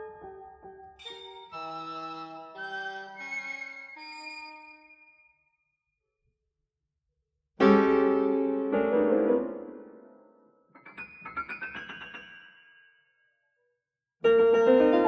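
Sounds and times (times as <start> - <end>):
solo piano: 0.0 - 3.4, 7.6 - 12.8, 14.2 - 15.0.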